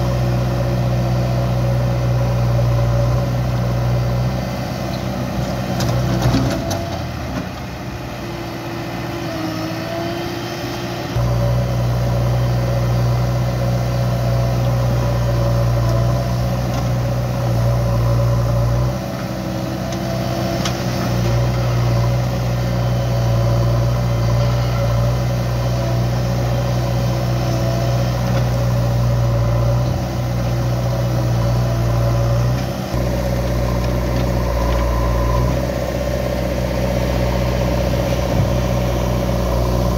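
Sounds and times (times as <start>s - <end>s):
diesel engine under load: 0.0s - 39.9s
whine over engine: 17.8s - 39.9s.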